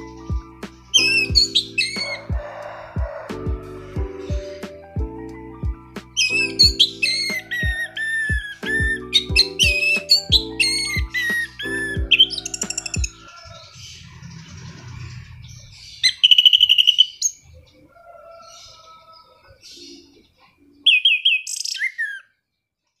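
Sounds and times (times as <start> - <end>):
thrush singing: 6.2 - 16.2
softer bird chirps: 19.7 - 22.8.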